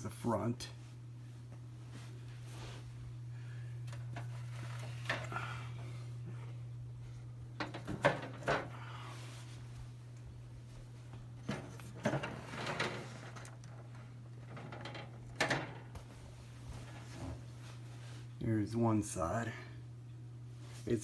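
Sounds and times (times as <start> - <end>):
fan motor humming: 0.0 - 21.0.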